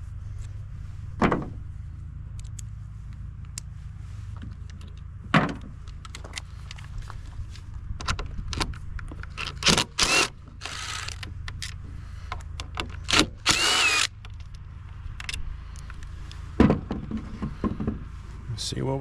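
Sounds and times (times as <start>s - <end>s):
cordless drill whining: 9.6s - 11.2s, 13.1s - 14.1s.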